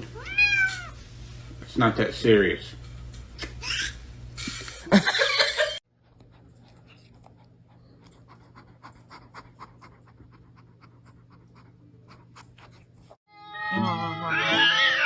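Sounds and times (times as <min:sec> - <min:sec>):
dog panting: 0:05.9 - 0:13.2.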